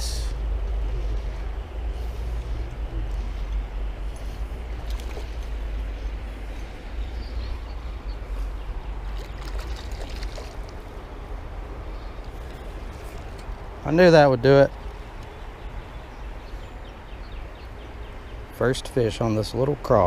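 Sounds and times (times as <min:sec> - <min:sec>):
creek water trickling: 0:00.4 - 0:19.6
faint splashes: 0:04.7 - 0:06.0, 0:09.0 - 0:10.9.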